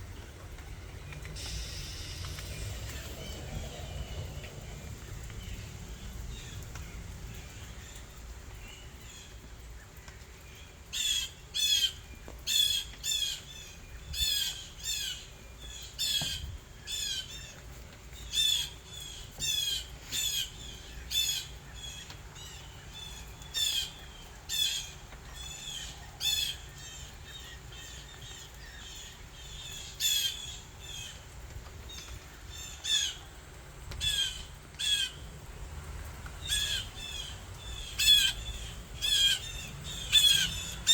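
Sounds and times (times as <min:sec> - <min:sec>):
bird calling: 0:00.6 - 0:09.4, 0:34.0 - 0:35.3, 0:36.4 - 0:40.9.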